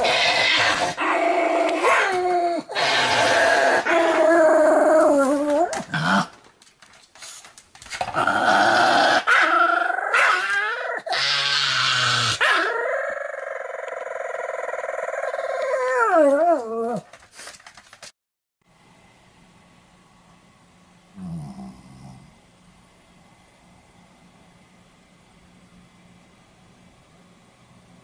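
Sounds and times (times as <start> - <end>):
dog snoring: 21.2 - 22.3.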